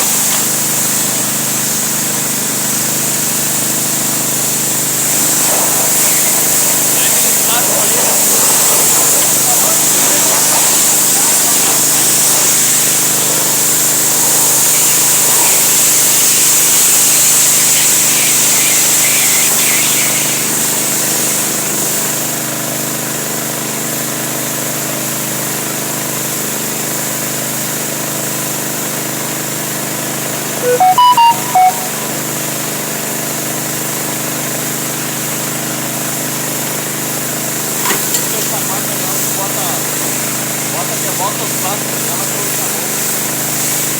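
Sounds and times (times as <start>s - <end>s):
motor humming with high hiss: 4.7s - 22.1s
brief beeping tones: 30.6s - 32.2s.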